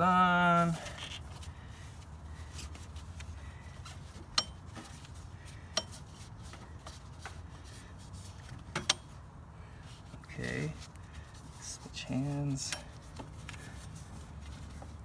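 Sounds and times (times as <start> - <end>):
wrench clinking on engine parts: 4.2 - 5.0, 5.7 - 6.1, 8.7 - 9.2, 12.6 - 13.0.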